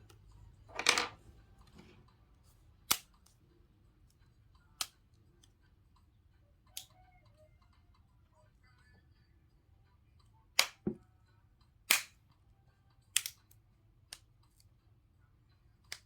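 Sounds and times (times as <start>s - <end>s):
sharp plastic clicks: 11.9s - 12.2s.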